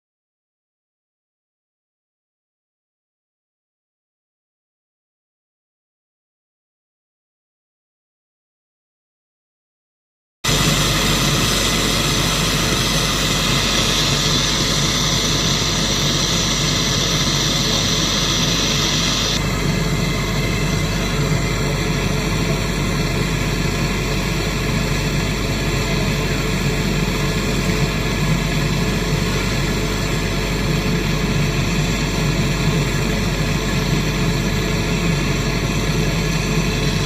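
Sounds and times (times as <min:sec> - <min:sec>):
machine drone with low hum: 0:10.5 - 0:37.0.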